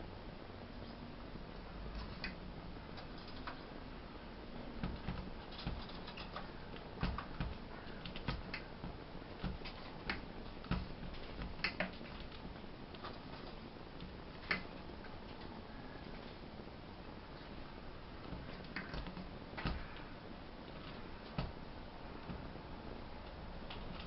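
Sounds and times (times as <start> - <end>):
background hiss: 0.0 - 24.0
birds pecking at feeder: 1.6 - 3.9, 4.6 - 16.4.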